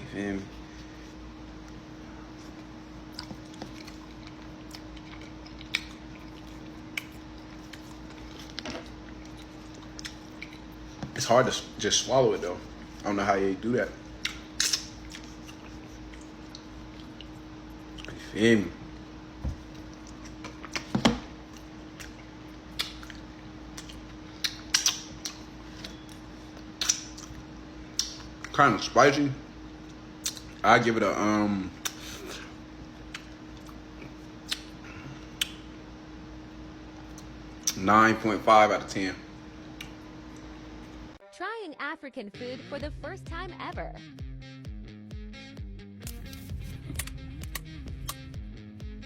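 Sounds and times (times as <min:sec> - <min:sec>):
faint steady hum: 0:00.0 - 0:44.8
person chewing wetly: 0:02.4 - 0:11.0, 0:14.0 - 0:18.2, 0:19.6 - 0:28.5, 0:29.8 - 0:30.6, 0:31.8 - 0:35.6
sharp mouth clicks: 0:14.2 - 0:17.3, 0:22.0 - 0:23.2, 0:23.8 - 0:25.4, 0:26.8 - 0:28.3, 0:30.2 - 0:30.5, 0:33.1 - 0:34.8, 0:47.0 - 0:48.3.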